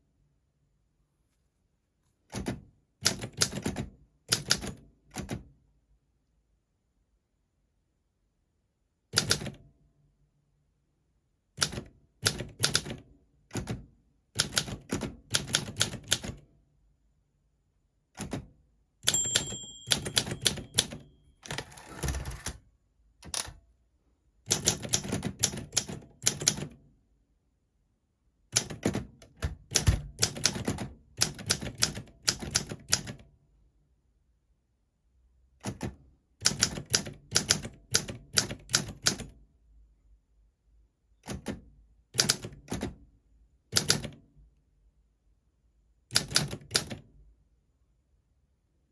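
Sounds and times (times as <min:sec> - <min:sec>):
typewriter bell ringing: 0:19.0 - 0:22.5
typewriter key strikes: 0:19.1 - 0:22.5
typewriter carriage return rattle: 0:19.1 - 0:22.6.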